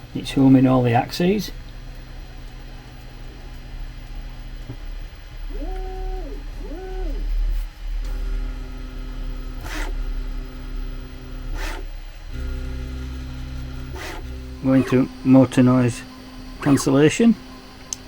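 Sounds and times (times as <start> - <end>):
stepper motors whining: 5.4 - 18.0.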